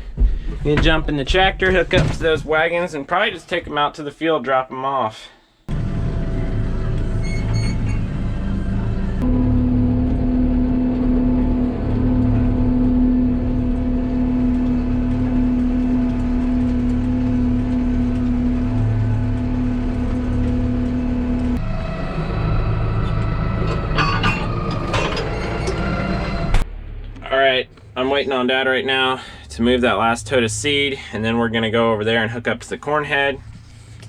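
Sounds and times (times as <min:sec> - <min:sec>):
tractor engine running: 0:05.7 - 0:30.8.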